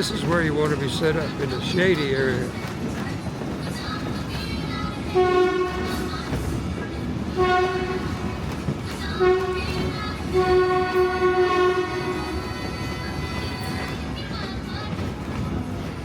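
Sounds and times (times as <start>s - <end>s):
moving train rumble: 0.0s - 16.0s
train whistle blasts: 5.2s - 6.1s, 7.4s - 8.2s, 9.2s - 12.4s.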